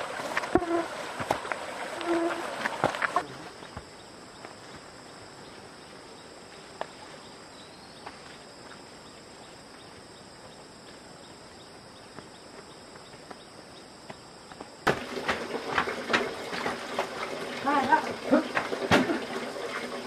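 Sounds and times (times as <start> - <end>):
insects droning: 0.0 - 20.0.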